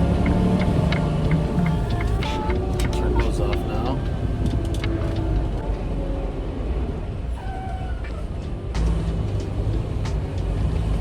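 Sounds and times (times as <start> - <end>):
music playing: 0.0 - 7.4, 8.0 - 11.0
truck engine rumble inside cab: 0.0 - 11.0.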